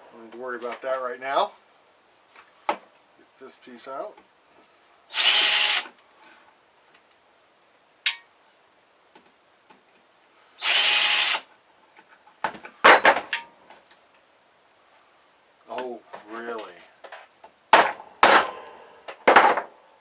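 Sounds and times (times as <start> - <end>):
power screwdriver running: 5.1 - 5.9, 10.6 - 11.4
knocks and clatter: 17.1 - 19.7.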